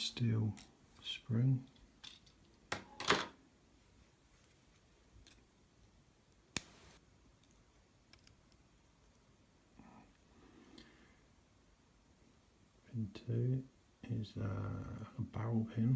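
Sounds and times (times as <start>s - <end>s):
metal tweezers clicking: 7.4s - 8.6s.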